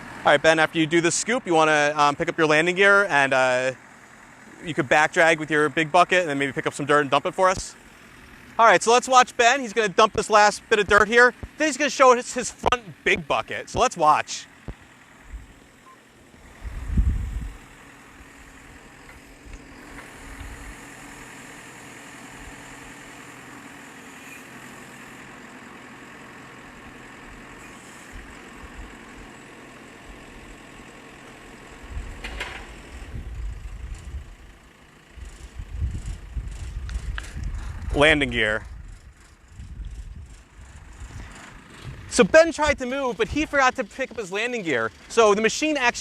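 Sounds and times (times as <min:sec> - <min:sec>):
diesel engine running: 0:00.0 - 0:46.0.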